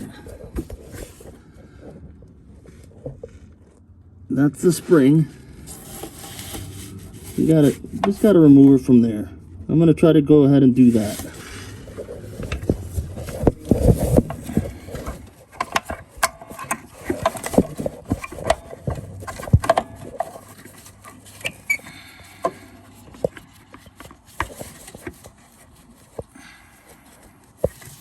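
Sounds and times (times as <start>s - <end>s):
metal clicks and knocks: 12.4s - 21.7s.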